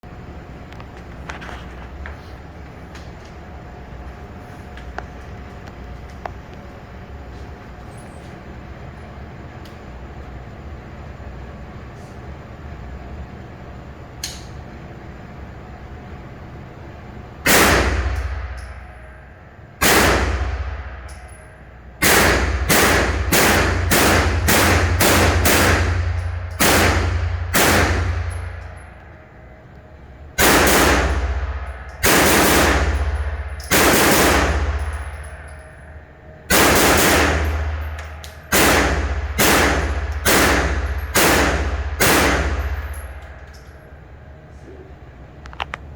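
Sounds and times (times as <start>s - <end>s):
gunshots echoing: 17.5s - 18.5s, 19.8s - 21.1s, 22.0s - 28.6s, 30.4s - 35.4s, 36.5s - 43.2s.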